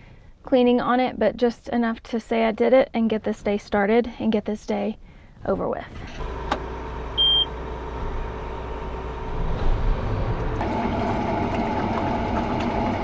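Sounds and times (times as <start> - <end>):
combine harvester hum: 6.0 - 13.0
higher hum: 6.1 - 10.8.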